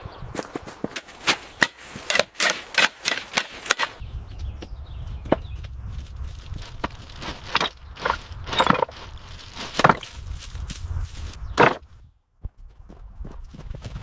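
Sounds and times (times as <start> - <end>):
low rumble: 4.0 - 12.1.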